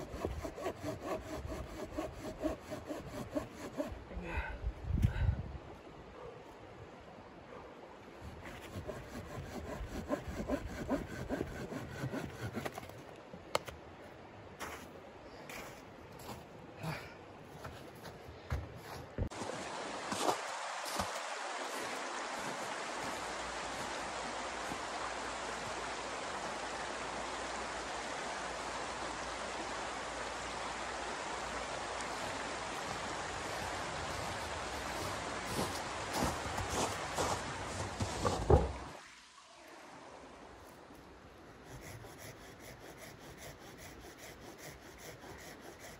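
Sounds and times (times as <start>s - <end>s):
hand saw cutting wood: 0.0s - 4.0s, 8.2s - 13.0s, 41.6s - 45.9s
snowstorm wind hissing: 30.9s - 38.2s.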